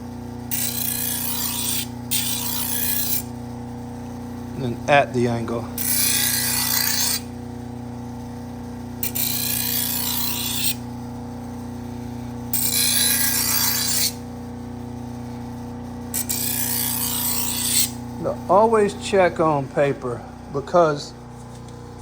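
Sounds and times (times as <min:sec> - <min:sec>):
motor humming: 0:00.0 - 0:22.0
knife hissing on spinning wheel: 0:00.5 - 0:03.3, 0:04.9 - 0:07.4, 0:09.0 - 0:10.8, 0:12.5 - 0:14.3, 0:16.1 - 0:18.4.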